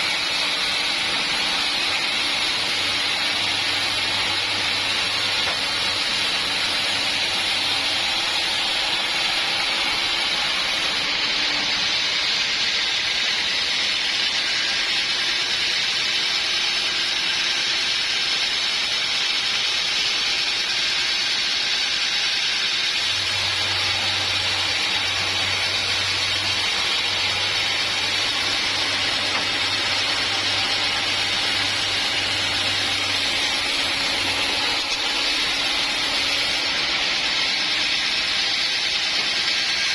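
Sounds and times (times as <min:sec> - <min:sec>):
saw blade cutting log: 0:00.0 - 0:39.9.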